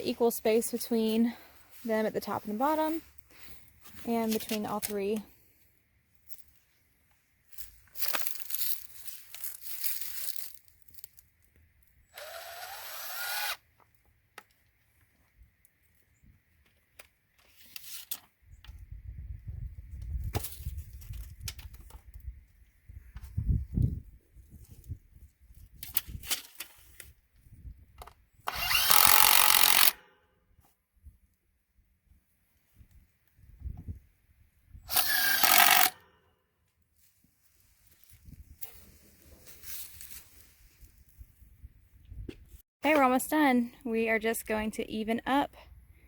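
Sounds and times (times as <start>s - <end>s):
scraping and rustling handling: 0.2s - 5.3s
cordless drill running: 12.2s - 13.6s, 28.5s - 30.0s, 34.9s - 36.0s.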